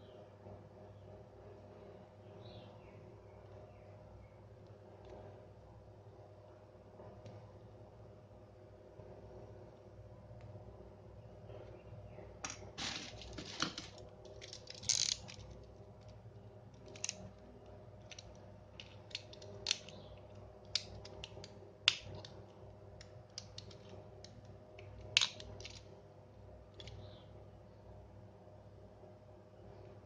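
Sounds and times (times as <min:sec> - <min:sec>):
faint steady hum: 0:00.0 - 0:30.0
small hard parts clicking and scraping: 0:12.4 - 0:25.9.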